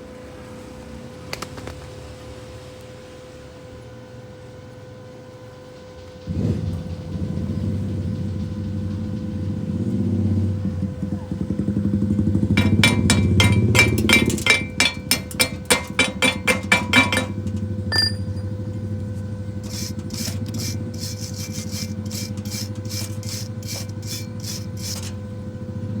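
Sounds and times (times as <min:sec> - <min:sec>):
welding machine humming: 0:11.7 - 0:26.0
welding arc crackling: 0:12.6 - 0:17.8, 0:19.5 - 0:25.2.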